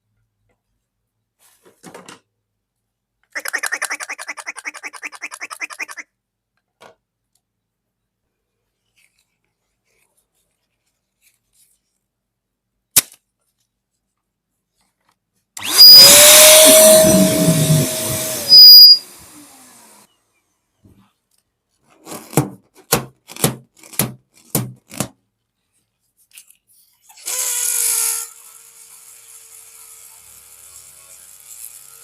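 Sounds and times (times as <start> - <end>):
balloon popping: 15.8 - 19.0
balloon squeaking: 15.8 - 19.0
balloon air hissing: 15.8 - 19.1.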